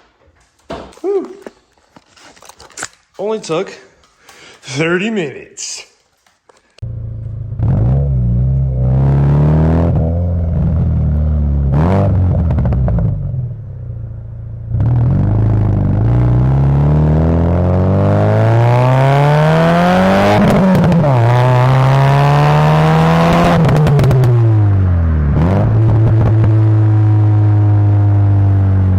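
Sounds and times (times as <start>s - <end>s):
car engine idling and revving: 6.8s - 28.9s.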